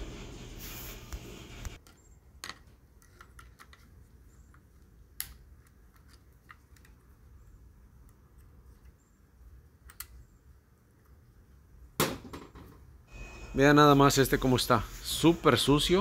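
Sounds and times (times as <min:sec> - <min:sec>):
small parts clicking: 0:09.8 - 0:10.2.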